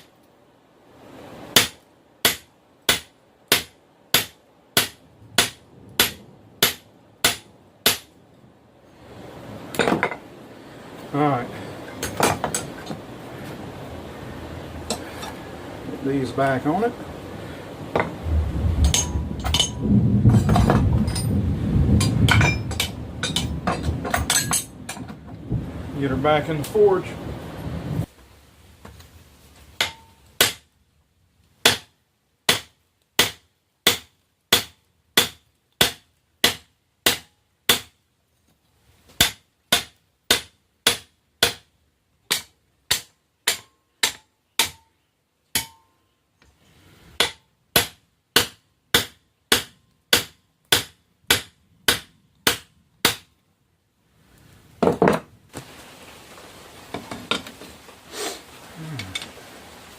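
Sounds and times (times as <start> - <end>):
hammer striking steel on anvil: 1.6 - 8.1, 18.8 - 19.8, 22.3 - 25.0, 29.8 - 30.6, 42.3 - 44.9, 45.5 - 45.9, 47.2 - 53.2.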